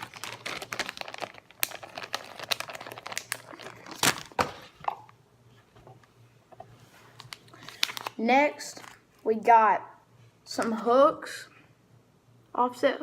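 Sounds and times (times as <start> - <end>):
plastic packaging crinkling: 0.0 - 5.1, 7.1 - 9.0.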